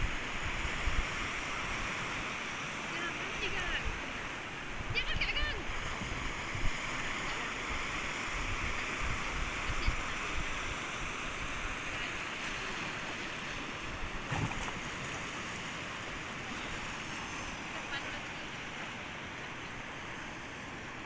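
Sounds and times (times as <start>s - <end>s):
sea waves washing onto beach: 0.0s - 21.0s.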